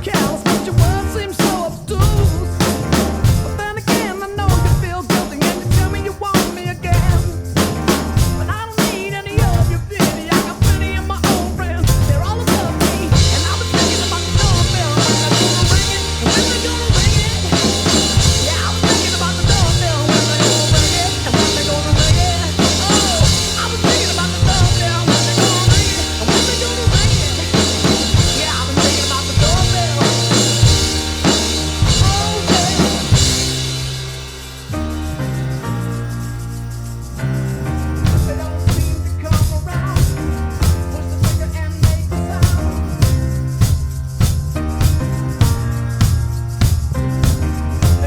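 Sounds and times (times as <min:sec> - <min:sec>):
person singing: 0:00.0 - 0:33.8
drum kit groove: 0:00.0 - 0:48.0
rock song with piano: 0:00.0 - 0:48.0.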